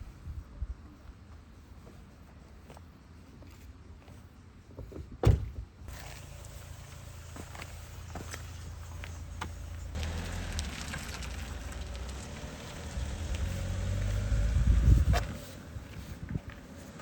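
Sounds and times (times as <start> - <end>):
light ticks and rustles: 7.5 - 13.5
wind buffeting microphone: 10.0 - 16.6.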